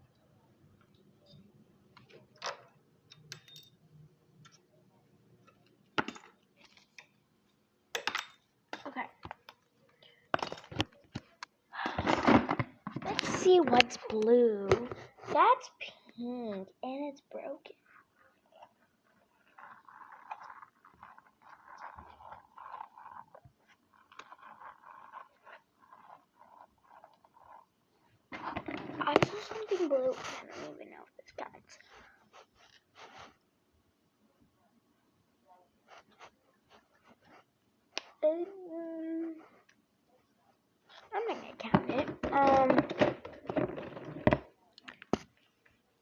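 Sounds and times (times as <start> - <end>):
toys rustling and crinkling: 10.6 - 15.5, 28.4 - 33.3, 40.9 - 45.5
light clicks and scrapes: 28.3 - 33.4.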